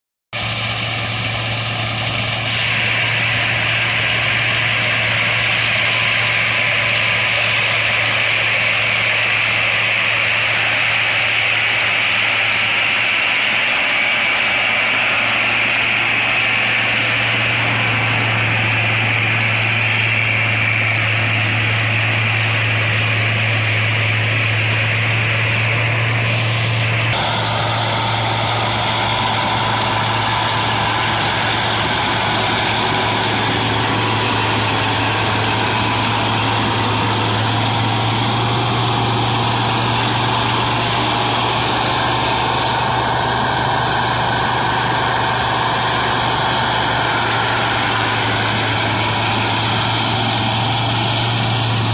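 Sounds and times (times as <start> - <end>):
combine harvester engine hum: 0.3 - 51.9
machinery hiss: 0.4 - 51.9.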